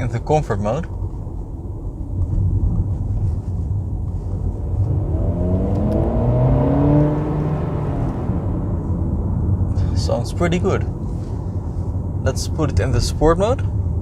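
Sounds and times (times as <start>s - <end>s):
car engine accelerating: 2.8s - 10.4s.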